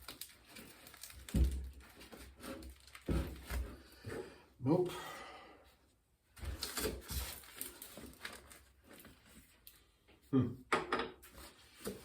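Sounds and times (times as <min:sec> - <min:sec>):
person effort grunts: 0:10.3 - 0:10.7.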